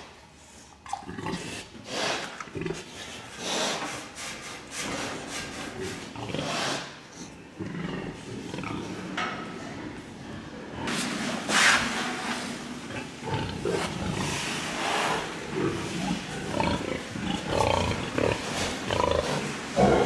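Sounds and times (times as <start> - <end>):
pigs grunting: 0.9 - 3.9, 4.8 - 11.5, 12.8 - 20.0
pigs squealing: 15.7 - 20.0.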